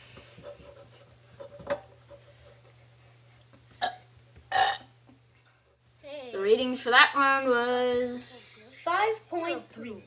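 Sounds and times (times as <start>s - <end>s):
person burping: 3.8s - 4.9s.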